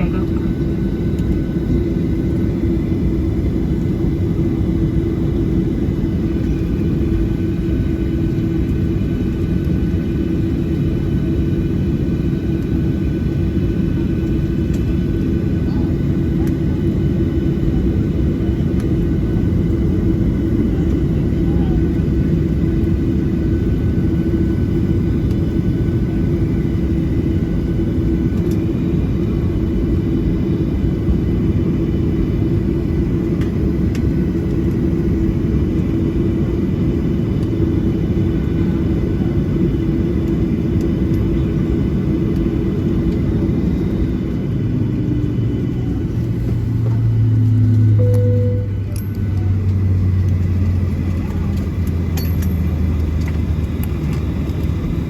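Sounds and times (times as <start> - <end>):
aircraft cabin rumble: 0.0 - 55.0
idling jet engines hum: 0.0 - 55.0
low drone: 46.1 - 51.0.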